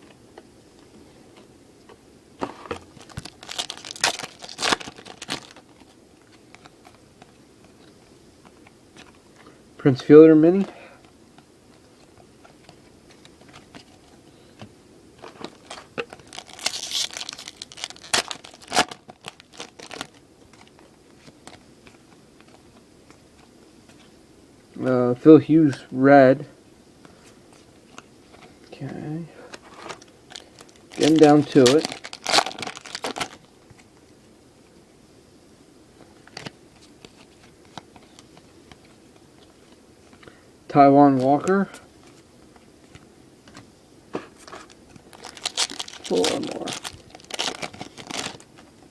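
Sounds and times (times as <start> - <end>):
cards clicking and rustling: 2.4 - 7.4, 11.8 - 24.0, 29.5 - 33.9, 44.4 - 48.7
foil wrapper crinkling tear: 2.8 - 7.0, 15.2 - 21.6, 29.6 - 33.5, 44.4 - 48.6.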